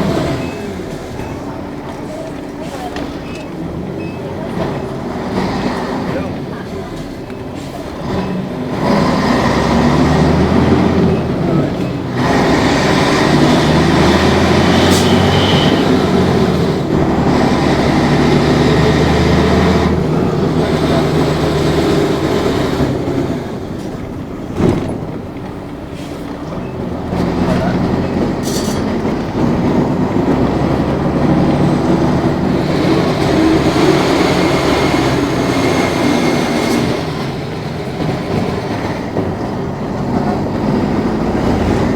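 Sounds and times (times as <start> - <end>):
bus diesel engine revving: 0.0 - 41.9
faint high turbo whistle: 14.8 - 16.0.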